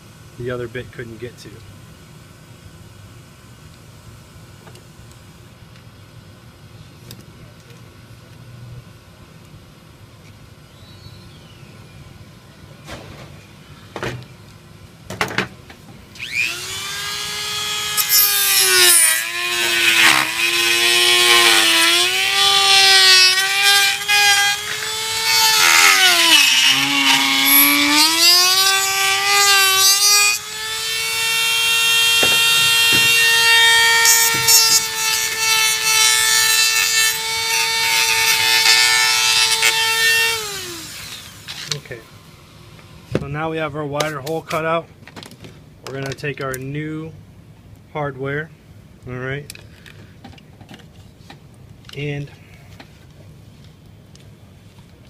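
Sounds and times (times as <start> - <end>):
rotary tool whining: 16.2 - 41.9.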